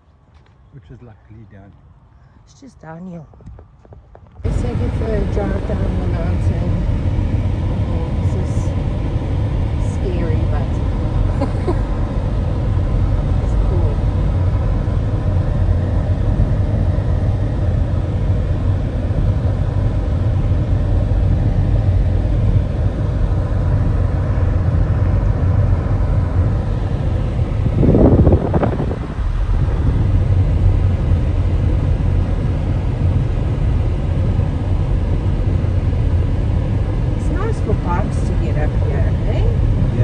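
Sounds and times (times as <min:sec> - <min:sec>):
car engine and road rumble: 0:00.0 - 0:40.0.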